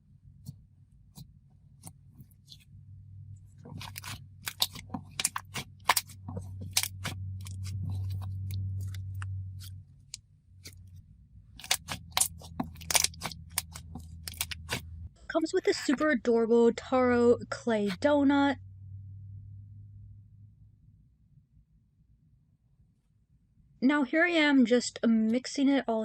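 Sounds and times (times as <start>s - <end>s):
low steady hum: 0.0s - 26.0s
slime squishing with sticky clicks: 3.4s - 11.0s, 11.6s - 14.9s.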